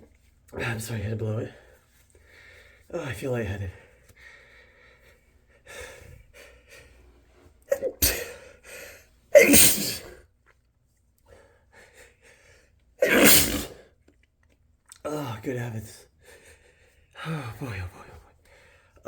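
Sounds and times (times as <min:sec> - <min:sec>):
man sneezing hard: 0:07.7 - 0:08.4, 0:09.3 - 0:10.2, 0:13.0 - 0:13.9.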